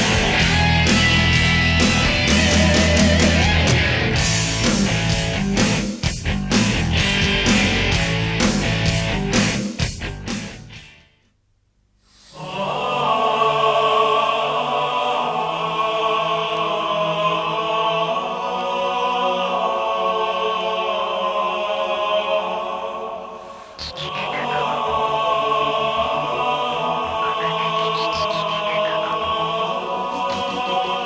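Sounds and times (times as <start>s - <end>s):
guitar rock music: 0.0s - 11.1s, 23.8s - 24.8s, 27.3s - 29.2s
choir-like held tones: 12.2s - 31.0s.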